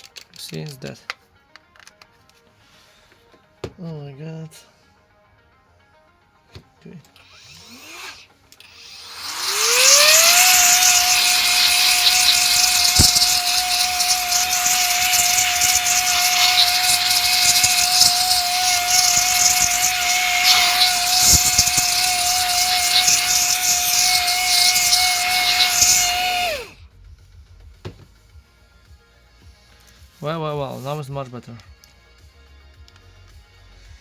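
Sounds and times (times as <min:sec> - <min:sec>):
electric fan motor whine: 0:07.3 - 0:26.8.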